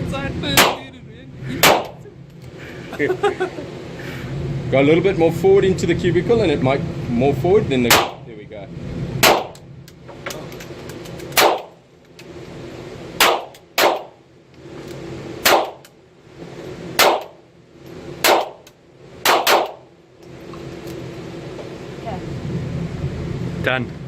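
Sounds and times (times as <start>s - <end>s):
gunshots: 0.6s - 0.9s, 1.6s - 2.0s, 7.9s - 8.2s, 9.2s - 9.6s, 11.4s - 11.8s, 13.2s - 14.1s, 15.4s - 15.8s, 17.0s - 17.4s, 18.2s - 18.6s, 19.2s - 19.8s.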